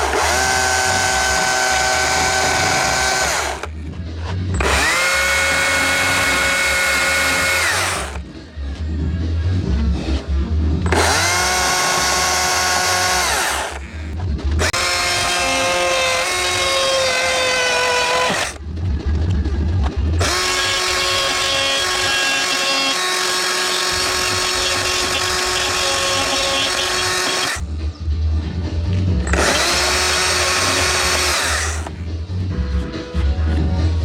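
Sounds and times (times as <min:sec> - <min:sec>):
chainsaw revving and idling: 0:00.0 - 0:03.8, 0:04.6 - 0:08.2, 0:10.9 - 0:18.6, 0:20.2 - 0:27.6, 0:29.3 - 0:31.9.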